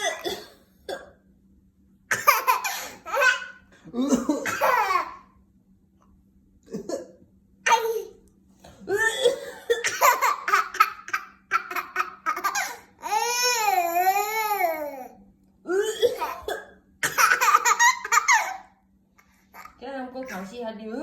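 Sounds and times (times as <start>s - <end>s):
baby giggling: 17.1s - 18.6s.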